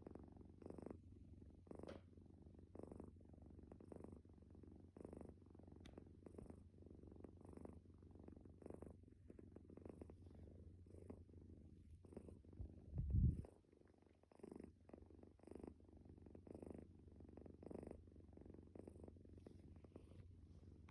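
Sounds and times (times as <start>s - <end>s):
cat snoring softly: 0.0s - 20.9s
steady low rumble: 12.6s - 13.5s
dull low bump: 12.9s - 13.5s.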